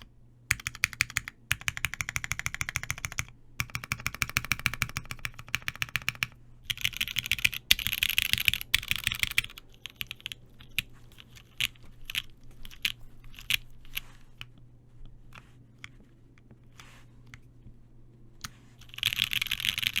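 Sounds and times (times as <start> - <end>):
mechanical keyboard typing: 0.0 - 14.1, 18.4 - 20.0.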